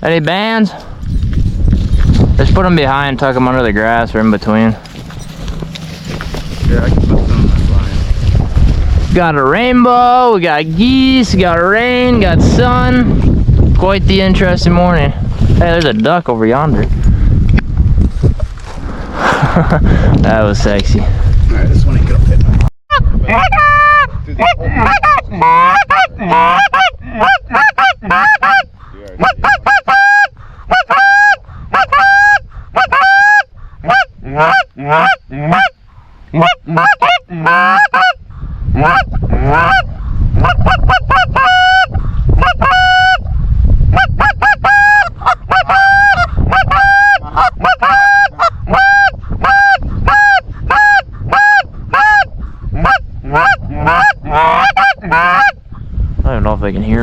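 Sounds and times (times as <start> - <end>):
low rumble: 0.9 - 23.3
goose honking: 23.3 - 35.8, 36.4 - 38.2, 38.8 - 43.2, 43.9 - 55.6.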